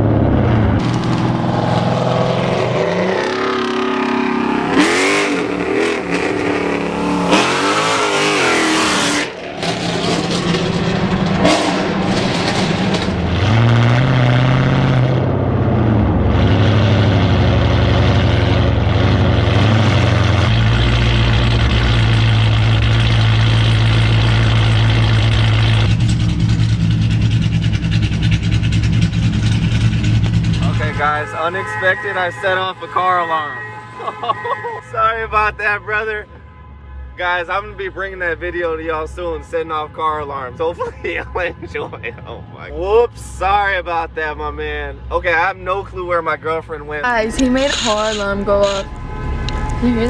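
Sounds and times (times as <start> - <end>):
car engine revving: 0.0 - 36.3, 37.2 - 50.0
exhaust pops: 0.7 - 2.1.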